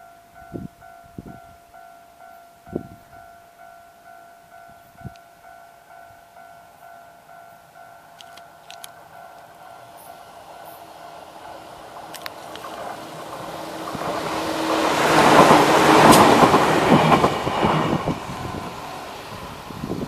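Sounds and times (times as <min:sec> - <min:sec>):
electric train passing: 0:00.0 - 0:20.0
wheels clacking over rail joints: 0:08.1 - 0:20.0.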